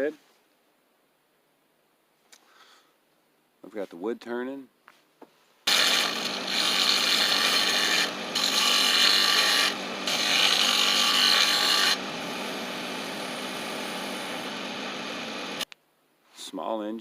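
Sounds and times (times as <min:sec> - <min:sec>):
lathe tool cutting wood: 0:05.7 - 0:15.6.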